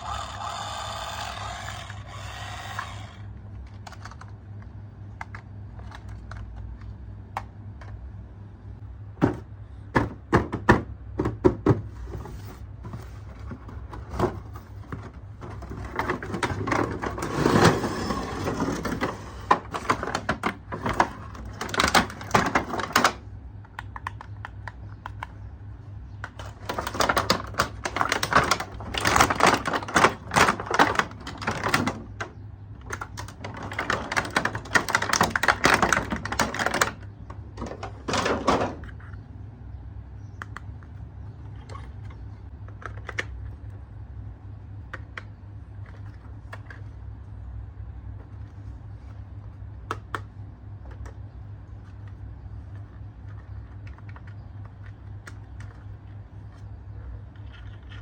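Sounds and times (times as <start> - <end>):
electronic toy sound effect: 0.0 - 3.3
plastic toys clicking and rattling: 0.0 - 8.0, 14.9 - 25.4, 26.2 - 39.2, 51.9 - 56.6
steady low hum: 0.0 - 58.0.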